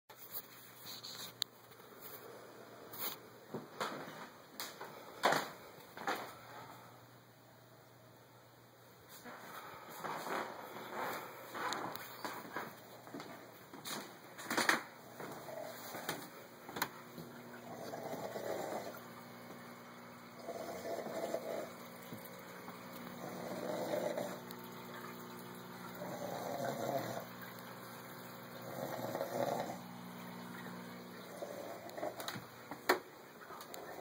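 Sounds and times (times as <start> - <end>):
person snoring: 17.5 - 19.2, 20.2 - 21.8, 23.1 - 24.5, 25.9 - 27.3, 28.5 - 30.1, 30.7 - 32.3.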